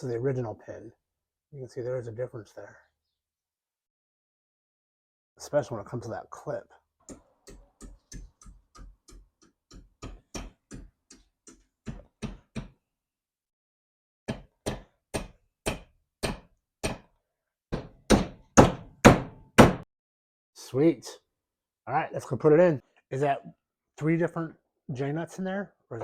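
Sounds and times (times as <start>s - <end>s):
hammer striking metal hinge: 7.1s - 12.8s, 17.7s - 19.8s.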